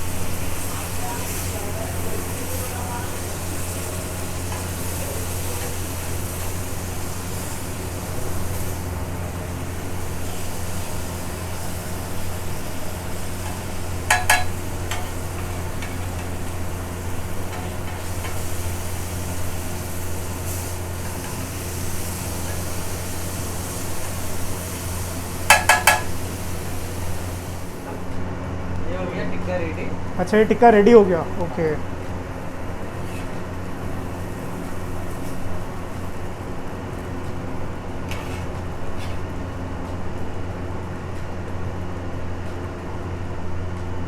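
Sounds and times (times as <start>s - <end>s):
food sizzling on a griddle: 0.0s - 28.0s, 31.8s - 39.4s
metal spatula clanking on griddle: 4.4s - 6.6s, 10.2s - 24.3s, 25.3s - 26.4s.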